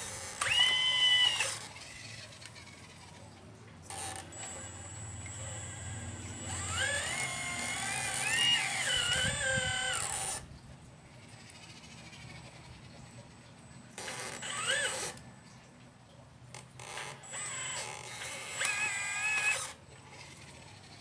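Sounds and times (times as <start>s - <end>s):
small electric motor whining: 0.0s - 10.5s, 11.1s - 15.3s, 16.5s - 21.0s.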